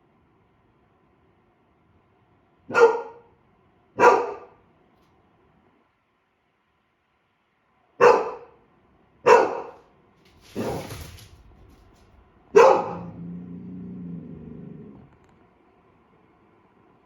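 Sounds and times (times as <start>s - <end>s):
puppy barking: 2.7s - 3.3s, 4.0s - 4.6s, 8.0s - 8.6s, 9.2s - 9.8s, 12.5s - 13.2s
short rushing noise: 10.3s - 13.1s.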